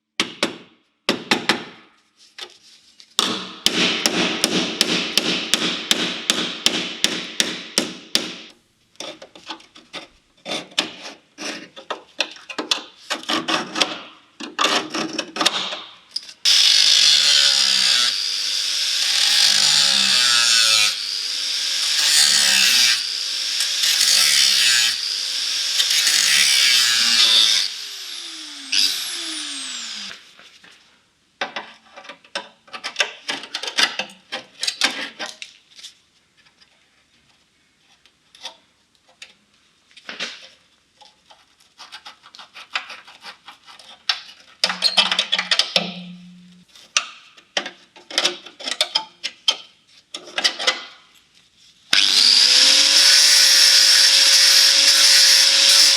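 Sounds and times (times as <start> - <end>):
power tool on sheet metal: 16.5 - 30.2, 51.9 - 55.9.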